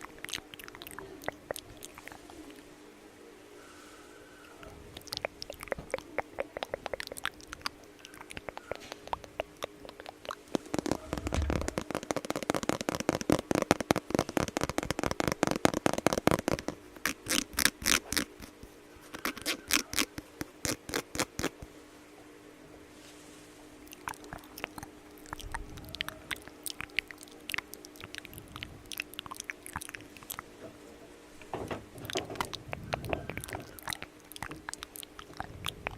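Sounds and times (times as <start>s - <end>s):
faint steady hum: 0.0s - 35.9s
crisp tapping and scratching: 5.0s - 21.7s, 31.4s - 35.9s.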